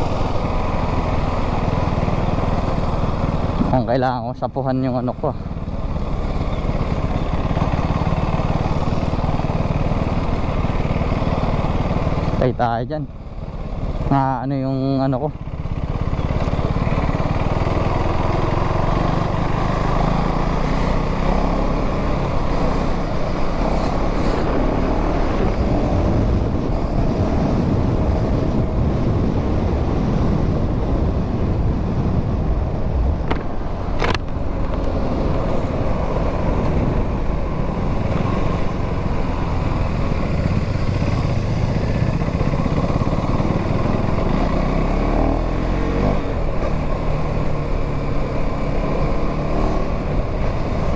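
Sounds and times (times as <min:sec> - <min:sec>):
motorcycle engine running: 0:00.0 - 0:50.9
wind rush: 0:21.5 - 0:50.9.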